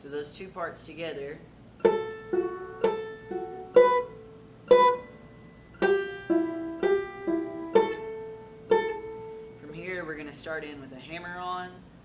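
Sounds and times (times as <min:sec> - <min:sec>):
banjo plucked notes and chords: 0:01.8 - 0:05.1, 0:05.8 - 0:09.6.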